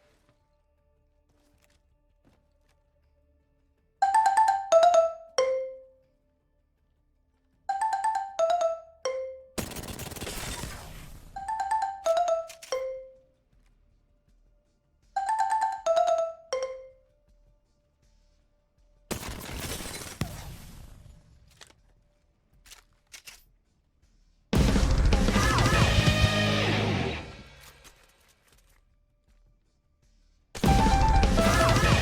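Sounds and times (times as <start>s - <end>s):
music with a beat: 30.6s - 32.0s.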